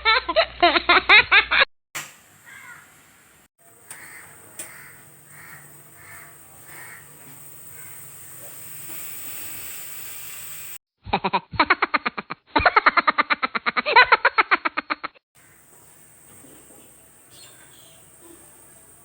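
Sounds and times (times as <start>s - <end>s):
faint steam hiss with puffs: 2.0s - 10.8s, 15.4s - 19.0s.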